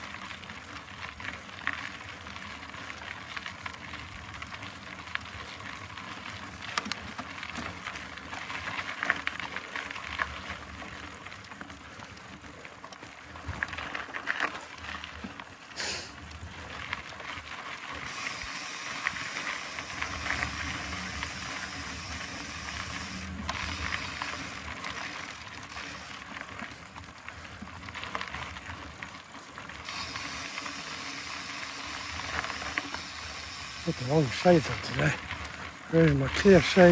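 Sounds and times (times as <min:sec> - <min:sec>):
bike clicks and knocks: 0:06.6 - 0:09.4, 0:17.3 - 0:26.6, 0:29.7 - 0:34.4
bike freehub ratcheting: 0:17.9 - 0:26.4, 0:29.8 - 0:35.3
tyres rolling rush: 0:30.7 - 0:36.9.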